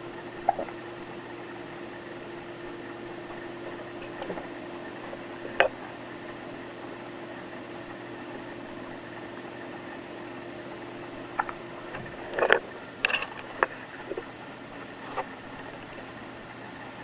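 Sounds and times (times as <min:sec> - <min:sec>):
steady background hum: 0:00.0 - 0:17.0
baby hiccuping: 0:00.4 - 0:00.7.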